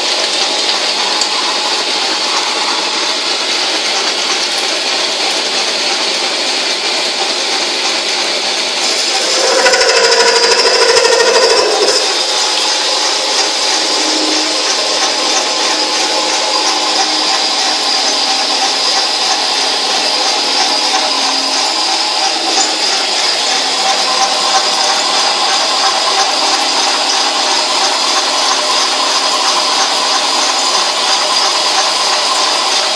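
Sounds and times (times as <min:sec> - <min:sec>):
metal lathe running: 0:00.0 - 0:32.9
rough louder grinding: 0:08.8 - 0:17.4.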